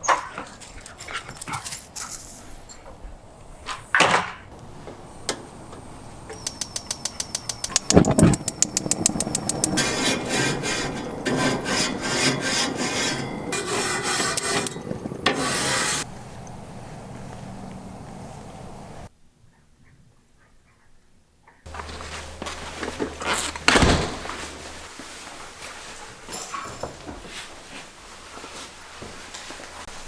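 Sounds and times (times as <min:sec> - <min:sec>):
quick clicks: 0:05.2 - 0:09.8
brush scraping a grill grate: 0:06.4 - 0:16.1.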